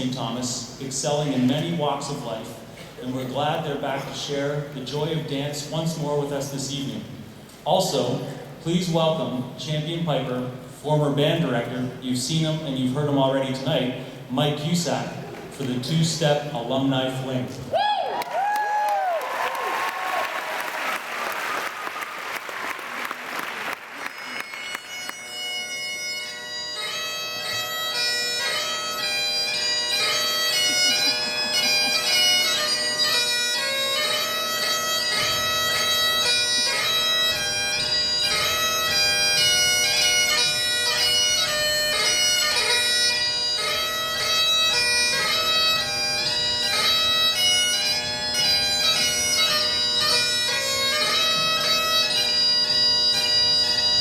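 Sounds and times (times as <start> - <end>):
applause: 18.1 - 25.2
bagpipe playing: 20.8 - 54.0.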